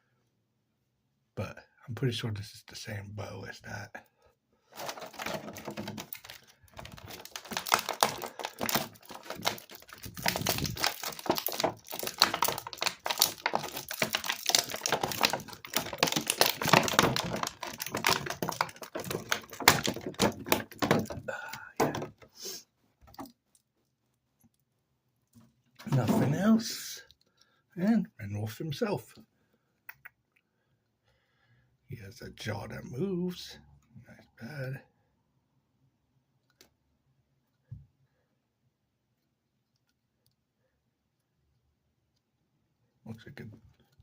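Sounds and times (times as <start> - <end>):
plastic packaging crinkling: 4.7 - 23.4.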